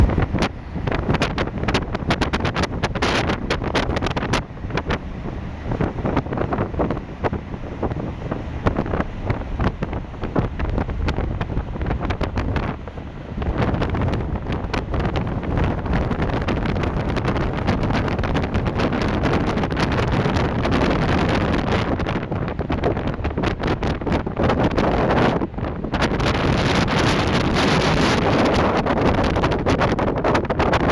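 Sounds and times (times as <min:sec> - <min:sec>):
ferry engine rumble: 0:00.0 - 0:30.9
wind buffeting microphone: 0:00.0 - 0:30.9.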